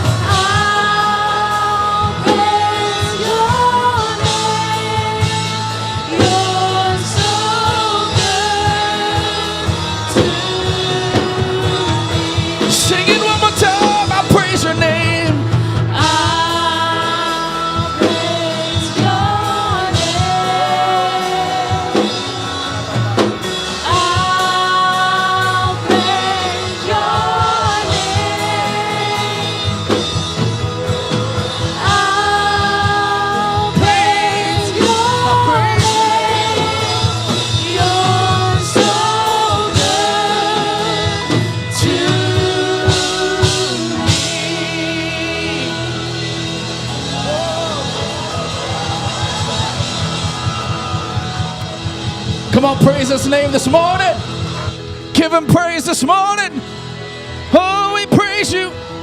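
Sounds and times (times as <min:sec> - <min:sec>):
band playing worship music: 0:00.0 - 0:59.0.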